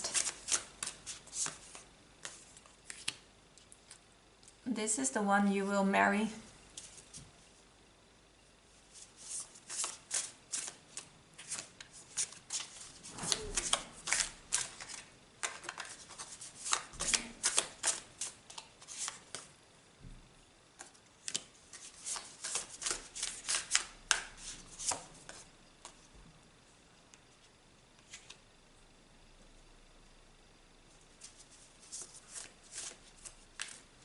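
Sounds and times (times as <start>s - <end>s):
cards shuffled by hand: 0.0s - 3.2s, 8.9s - 19.5s, 20.8s - 26.0s, 31.2s - 33.9s.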